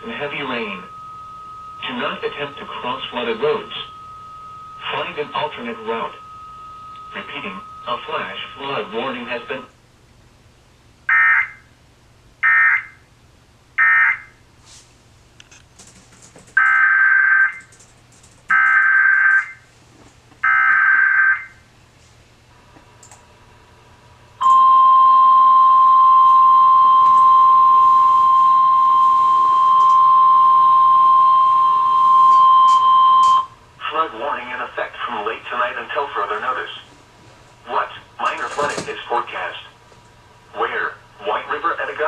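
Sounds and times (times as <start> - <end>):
steady warning alarm tone: 0.0 - 9.7, 11.1 - 11.8, 12.4 - 13.1, 13.8 - 14.4, 16.6 - 17.8, 18.5 - 19.7, 20.4 - 21.7, 24.4 - 36.9.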